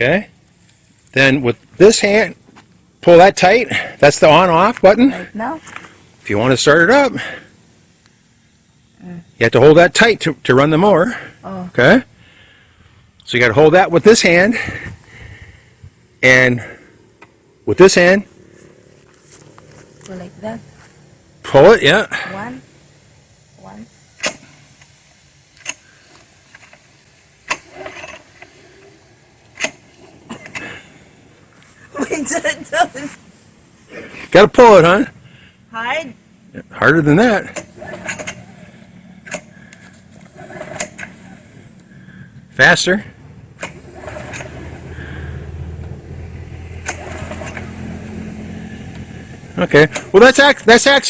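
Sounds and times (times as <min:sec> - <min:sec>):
lawnmower engine droning: 0:00.0 - 0:51.0
lawnmower starter cord rasp: 0:24.2 - 0:24.9, 0:25.6 - 0:33.2, 0:37.4 - 0:42.8, 0:43.5 - 0:51.0.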